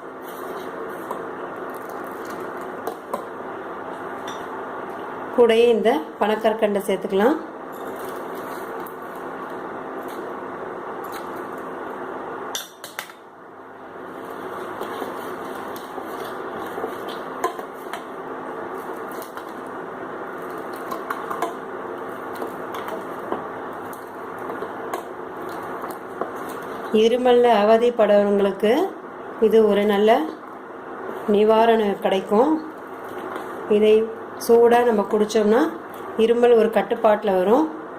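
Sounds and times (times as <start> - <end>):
milk boiling in a pan: 0.0 - 5.3, 13.4 - 27.3.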